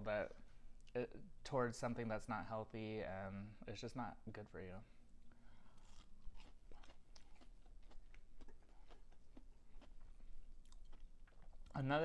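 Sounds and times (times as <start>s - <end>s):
person chewing crunchy food: 5.5s - 11.8s.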